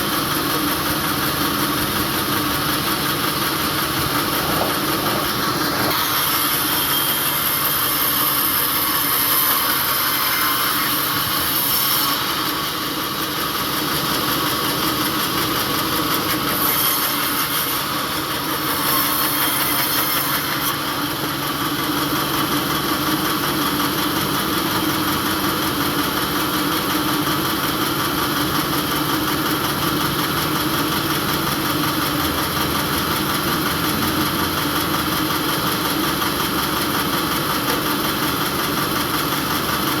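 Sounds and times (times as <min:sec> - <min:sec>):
engine idling: 0:00.0 - 0:06.1, 0:21.1 - 0:40.0.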